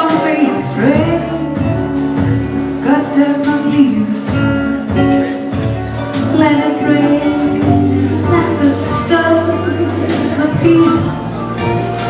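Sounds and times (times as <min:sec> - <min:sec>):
live band music: 0:00.0 - 0:12.0
people singing: 0:06.8 - 0:11.4.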